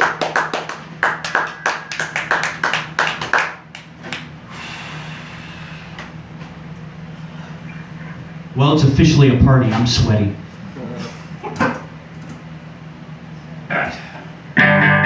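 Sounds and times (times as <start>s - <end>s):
audience clapping: 0.0s - 4.3s
amplifier hum: 0.8s - 15.0s.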